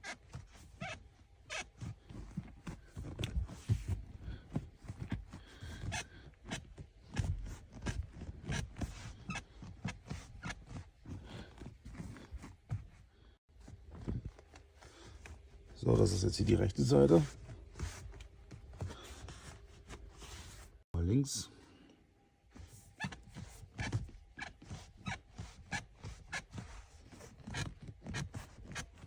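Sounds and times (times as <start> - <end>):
car seat support squeaking: 0.0 - 13.0, 22.8 - 29.0.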